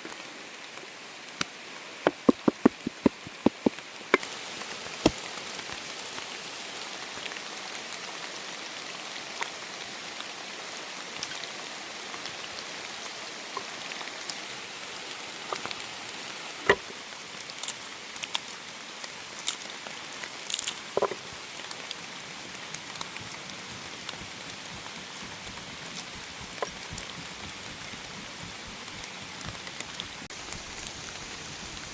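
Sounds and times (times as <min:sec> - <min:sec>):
steady rain falling: 0:00.0 - 0:31.9
sharp taps and clicks: 0:02.0 - 0:04.2, 0:24.0 - 0:30.2.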